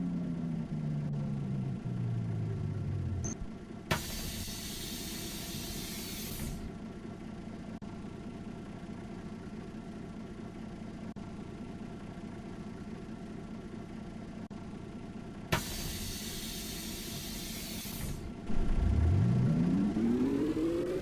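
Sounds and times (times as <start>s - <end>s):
bus engine rumble: 0.0s - 21.0s
loud pneumatic air hiss: 3.9s - 6.6s, 15.6s - 18.2s.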